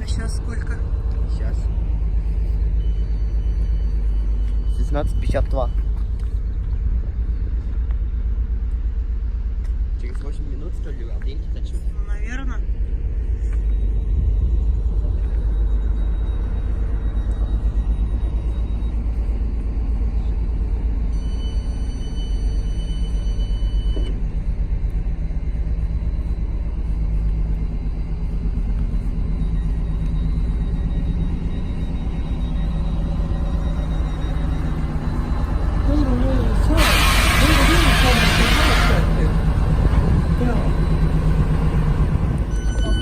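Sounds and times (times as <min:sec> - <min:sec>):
vehicle engine rumble: 0:00.0 - 0:43.0
high even tone: 0:10.4 - 0:43.0.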